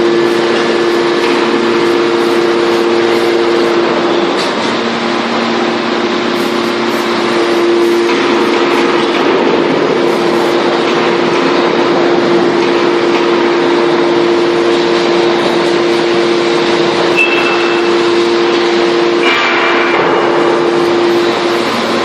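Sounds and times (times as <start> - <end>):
baler machine humming: 0.0 - 22.0
high machine squeal: 17.0 - 19.2.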